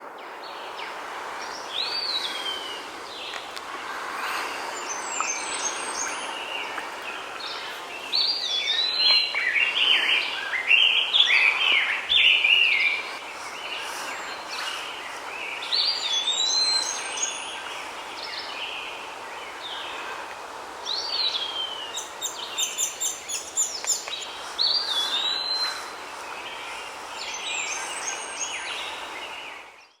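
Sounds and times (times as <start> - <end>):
steady hiss: 0.0 - 29.8
birds chattering: 1.4 - 17.4, 21.2 - 28.9.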